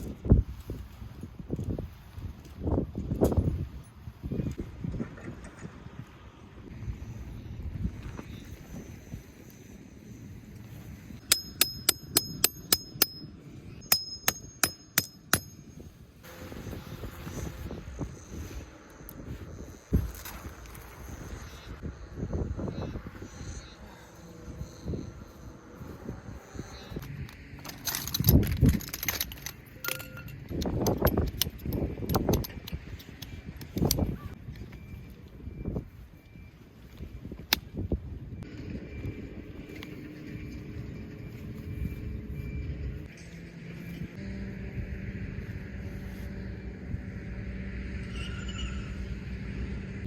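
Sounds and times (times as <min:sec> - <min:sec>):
hammer striking metal tent peg: 0:11.2 - 0:15.8.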